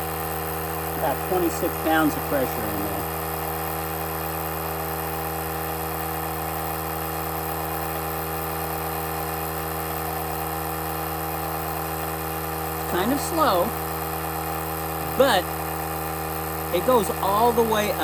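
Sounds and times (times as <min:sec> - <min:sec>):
tire compressor humming: 0:00.0 - 0:18.0.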